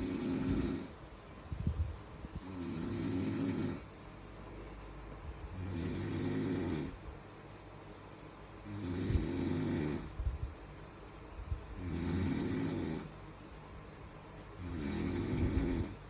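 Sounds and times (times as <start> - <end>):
man snoring: 0.0 - 1.0, 2.4 - 3.9, 5.5 - 7.0, 8.6 - 10.2, 11.8 - 13.2, 14.6 - 16.0
quiet breathing: 0.0 - 1.0, 14.6 - 16.0.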